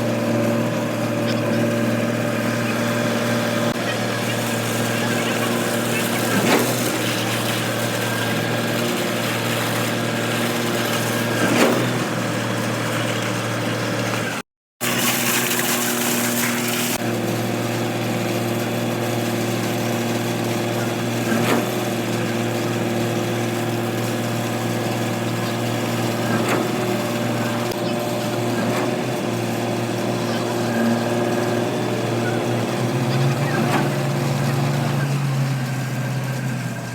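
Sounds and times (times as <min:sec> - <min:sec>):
machine humming: 0:00.0 - 0:36.9.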